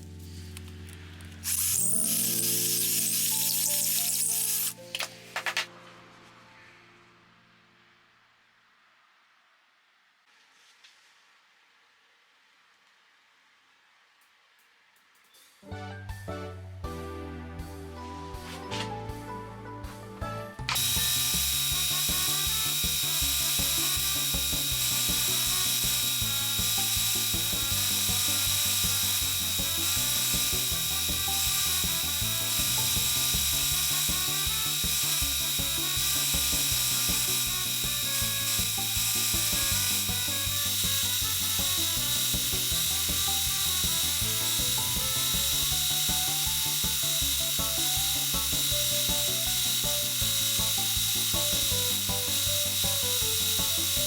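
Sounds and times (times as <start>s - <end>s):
background music with beat: 15.3s - 54.0s
thin steady whine: 20.7s - 54.0s
tool rasping on material: 20.8s - 54.0s.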